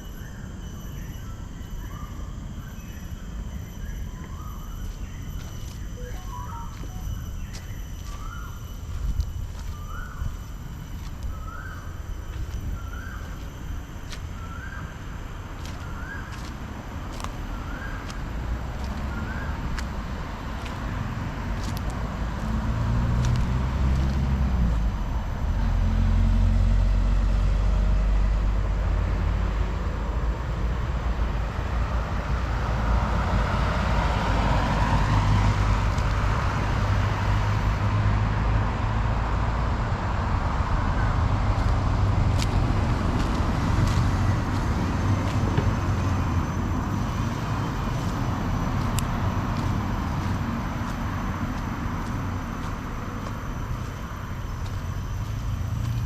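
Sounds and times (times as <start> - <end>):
road traffic rumble: 0.0 - 56.0
vehicle passing: 14.3 - 27.6, 33.0 - 56.0.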